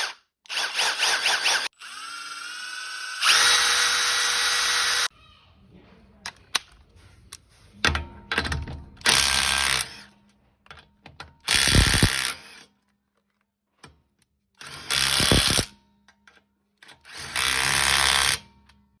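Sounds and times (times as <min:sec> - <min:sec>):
impact wrench bursts: 0:00.0 - 0:05.1, 0:11.5 - 0:12.6, 0:14.6 - 0:15.7.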